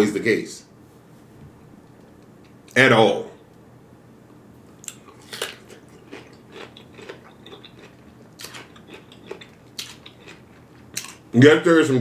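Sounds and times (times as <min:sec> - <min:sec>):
person chewing food: 0:04.7 - 0:11.3.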